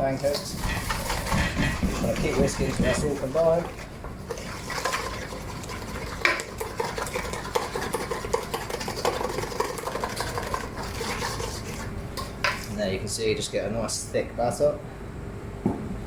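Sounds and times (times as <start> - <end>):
whisk beating batter in a bowl: 0.0 - 12.8.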